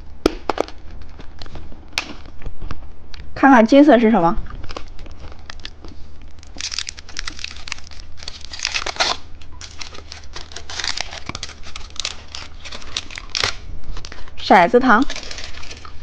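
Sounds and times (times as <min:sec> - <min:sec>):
plastic wrapper tearing: 0:04.5 - 0:14.3, 0:15.0 - 0:16.0
plastic wrapper crinkling: 0:04.5 - 0:16.0.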